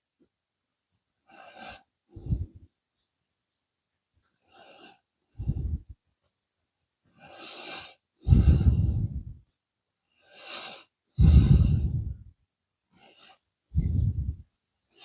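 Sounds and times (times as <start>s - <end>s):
person breathing: 1.5s - 2.6s, 4.5s - 6.0s, 7.2s - 9.4s, 10.2s - 12.3s, 12.9s - 15.0s.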